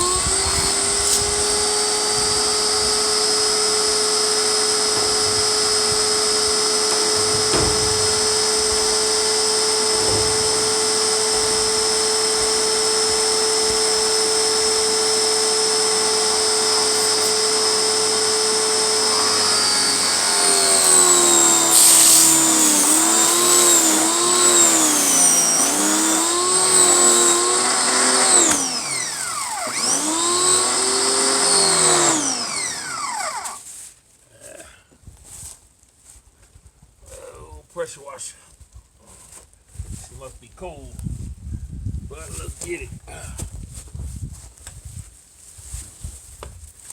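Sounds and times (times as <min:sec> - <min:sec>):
pressure washer motor whine: 0:00.0 - 0:33.6.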